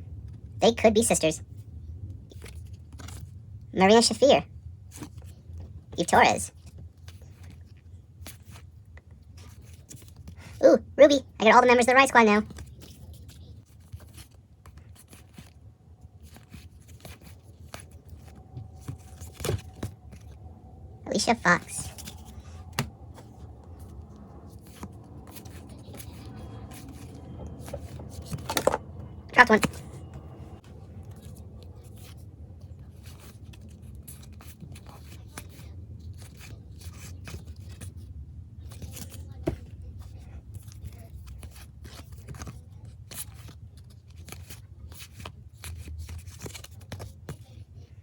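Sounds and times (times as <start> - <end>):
cards clicking and scraping: 2.3 - 3.4, 12.4 - 20.4, 21.1 - 38.0, 38.7 - 47.4
trading cards sliding papery swishes: 16.2 - 20.4, 21.1 - 30.0.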